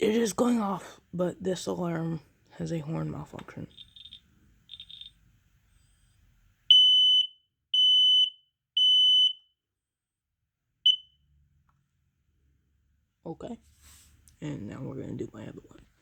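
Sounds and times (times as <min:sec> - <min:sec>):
faint alarm chirps: 0:03.7 - 0:05.2, 0:10.8 - 0:11.2
smoke alarm beeping: 0:03.7 - 0:05.2, 0:06.7 - 0:09.5, 0:10.8 - 0:11.2.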